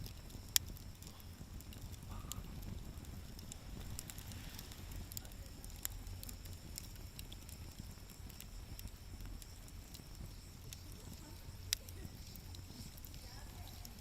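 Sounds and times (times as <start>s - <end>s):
fire low rumble: 0.0s - 14.0s
wood fire crackling: 0.0s - 14.0s.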